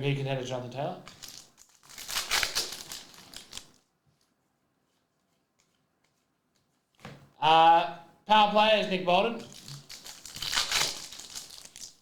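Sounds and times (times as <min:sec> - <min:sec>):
crinkling foil pack and cards: 0:01.1 - 0:03.8, 0:09.3 - 0:12.0.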